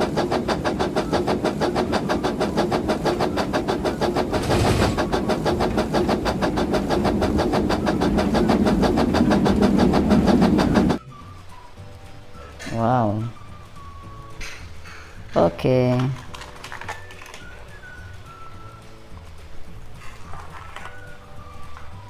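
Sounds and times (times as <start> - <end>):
toy train rhythmic clatter: 0.0 - 22.0.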